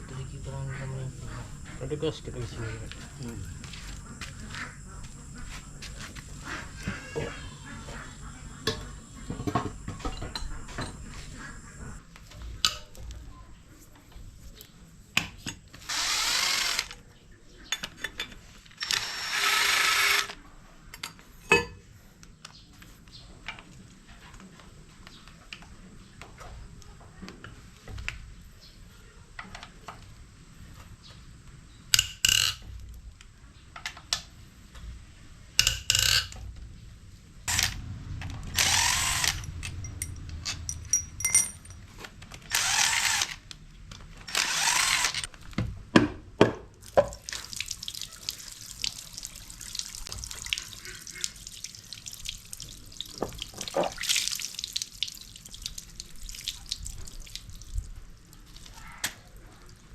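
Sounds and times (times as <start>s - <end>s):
air tool hissing bursts: 15.9s - 16.9s, 18.8s - 20.4s, 44.3s - 45.3s.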